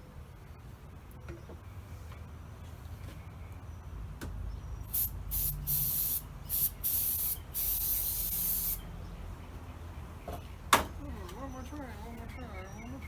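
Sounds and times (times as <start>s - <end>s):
aerosol spray can hissing: 4.9s - 8.8s.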